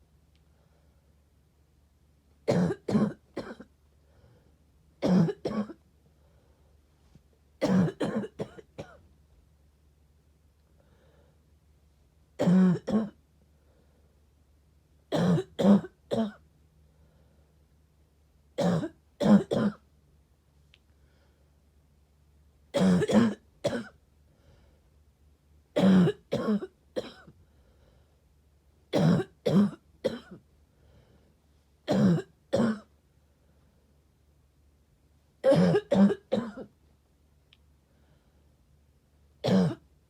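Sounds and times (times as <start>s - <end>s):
person coughing: 2.5s - 3.7s, 5.0s - 5.8s, 7.6s - 9.0s, 12.4s - 13.2s, 15.1s - 16.4s, 18.6s - 19.8s, 22.8s - 24.0s, 25.8s - 27.3s, 28.9s - 30.4s, 31.9s - 32.9s, 35.4s - 36.7s, 39.4s - 39.8s.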